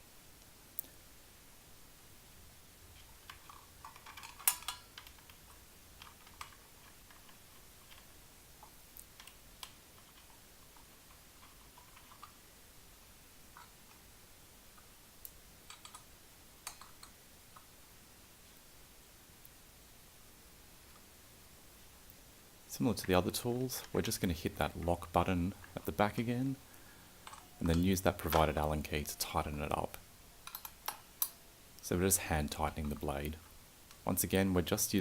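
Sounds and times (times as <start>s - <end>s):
metal parts clicking and knocking: 3.0s - 12.4s, 15.7s - 17.7s, 27.2s - 28.8s, 30.4s - 31.4s.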